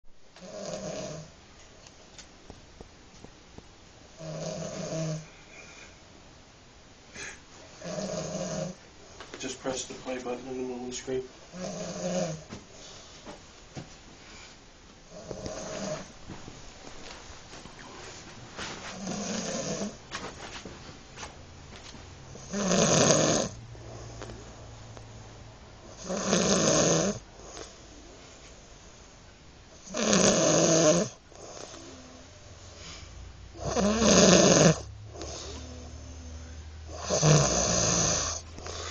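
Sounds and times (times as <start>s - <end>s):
man snoring: 0.4s - 1.3s, 4.2s - 5.3s, 7.8s - 8.8s, 10.6s - 12.5s, 15.1s - 16.1s, 19.0s - 20.0s, 22.4s - 24.2s, 25.9s - 27.2s, 29.8s - 32.3s, 33.6s - 38.9s
soft breathing: 4.7s - 6.2s, 7.1s - 10.4s, 11.5s - 13.4s, 14.0s - 16.2s, 17.0s - 21.4s, 23.5s - 24.9s, 31.3s - 33.6s, 34.8s - 37.6s, 38.2s - 38.9s.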